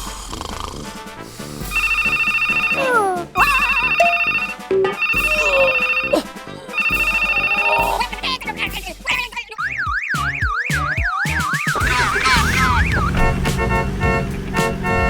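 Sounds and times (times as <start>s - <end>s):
children's background music: 0.8s - 15.0s
cartoon whistle effects: 1.7s - 6.2s, 6.8s - 8.0s, 9.6s - 13.2s
trilling telephone ringtone: 1.7s - 8.1s.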